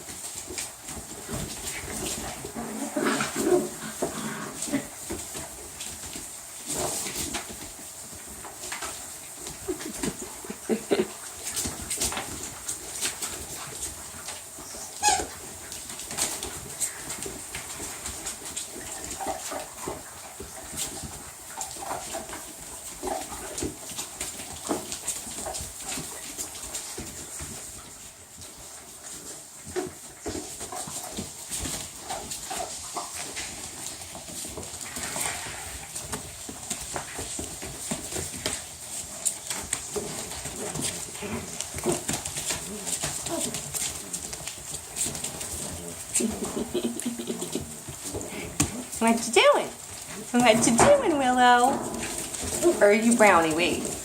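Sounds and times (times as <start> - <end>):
puppies scuffling: 0.0 - 54.0
puppy noises: 0.0 - 54.0
puppies whining and yipping: 14.6 - 15.5.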